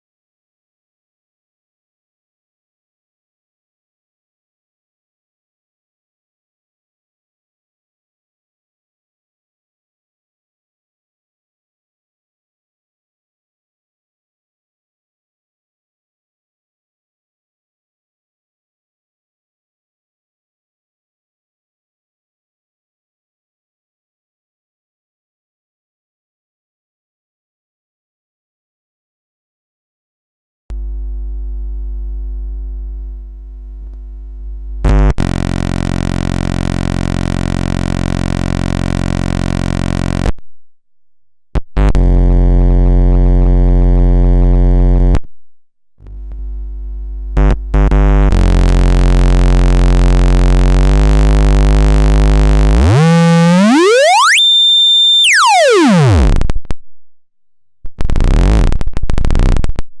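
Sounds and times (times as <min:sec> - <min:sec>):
oscillator test tones: 0:47.4 - 0:56.8.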